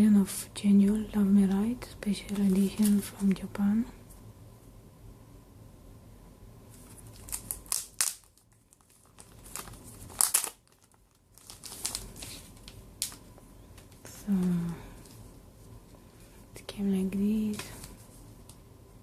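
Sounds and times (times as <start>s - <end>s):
packaging crinkling and rustling: 2.3s - 3.4s, 6.7s - 15.2s.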